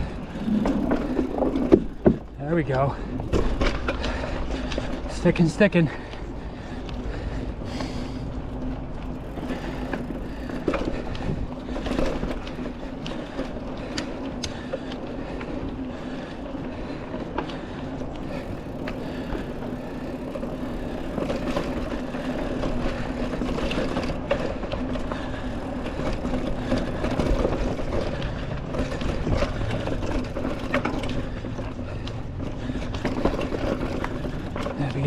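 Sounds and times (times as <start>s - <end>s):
bike rattles and clicks: 0.0s - 35.0s
tire noise on dirt: 0.0s - 35.0s
freehub ratchet buzzing: 9.2s - 11.1s, 18.2s - 23.9s.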